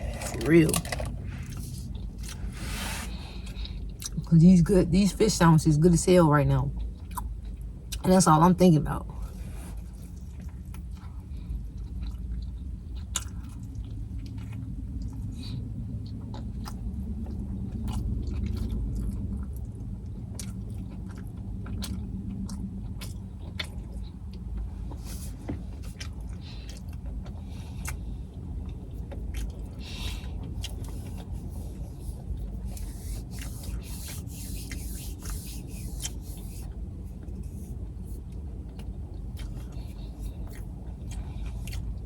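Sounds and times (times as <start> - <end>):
chewing with wet mouth clicks: 0.0 - 2.6, 3.2 - 4.3, 6.7 - 8.1, 9.8 - 42.0
steady low rumble: 0.0 - 42.0.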